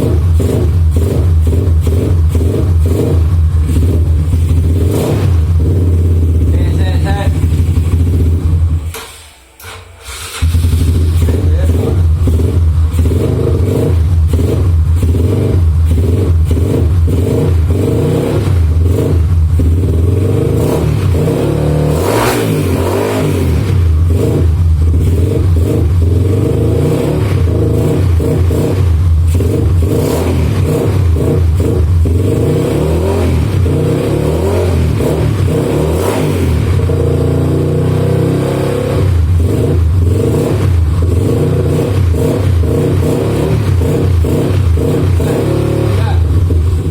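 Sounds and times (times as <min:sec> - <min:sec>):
motorcycle engine revving: 0:00.0 - 0:46.9.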